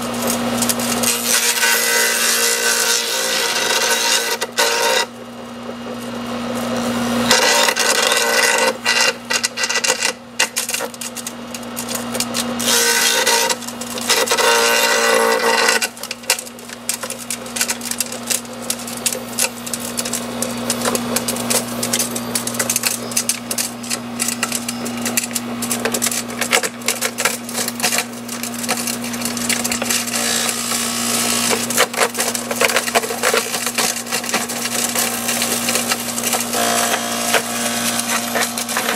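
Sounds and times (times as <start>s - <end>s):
shredder motor humming: 0.0s - 38.9s
branches crunching into chips: 16.2s - 38.9s.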